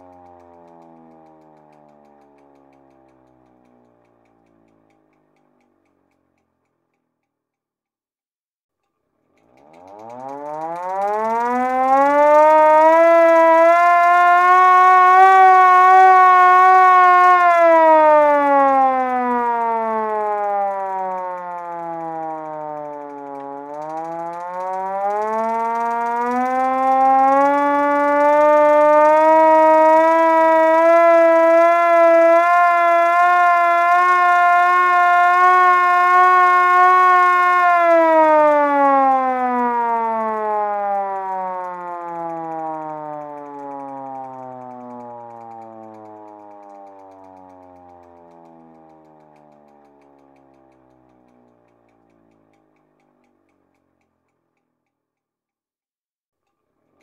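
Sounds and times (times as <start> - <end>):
manual fire siren wailing: 0.0 - 2.9, 9.7 - 51.5.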